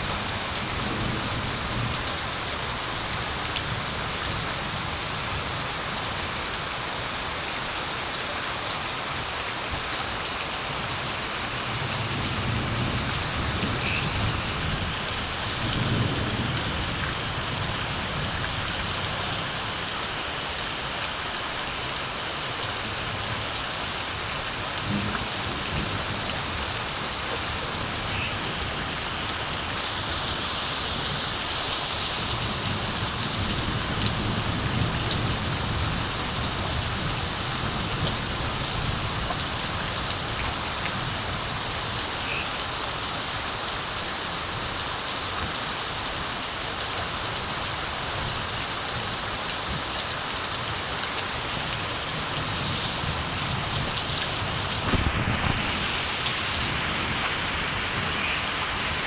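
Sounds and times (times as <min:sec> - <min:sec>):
steady rain falling: 0:00.0 - 0:59.0
distant thunder rumbling: 0:11.7 - 0:19.0, 0:24.6 - 0:29.8.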